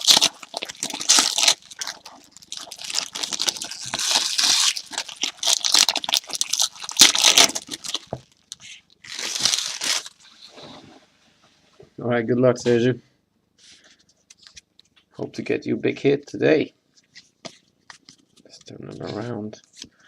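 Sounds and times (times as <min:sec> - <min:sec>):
packaging tearing and crinkling: 0:00.0 - 0:10.2.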